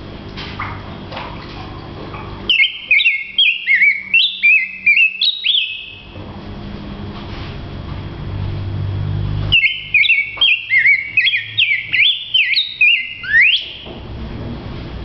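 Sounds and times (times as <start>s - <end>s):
songbird whistling: 2.5s - 6.1s, 9.5s - 13.9s.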